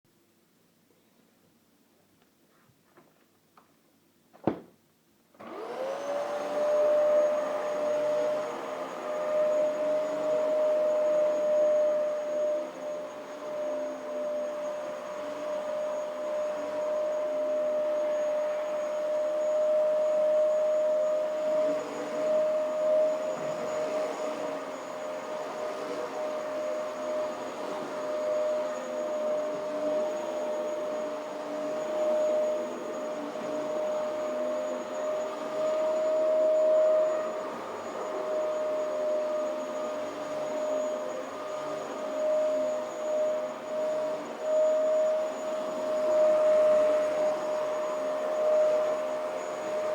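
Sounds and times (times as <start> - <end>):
vacuum cleaner running: 5.3 - 49.9.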